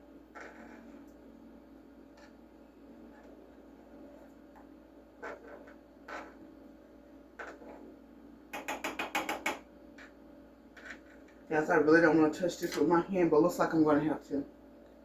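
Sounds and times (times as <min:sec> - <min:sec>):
utensil knocking against container: 0:08.5 - 0:09.6.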